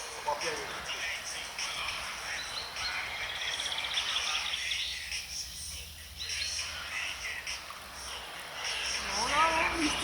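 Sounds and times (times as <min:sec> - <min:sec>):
songbirds chirping: 0:00.0 - 0:10.0.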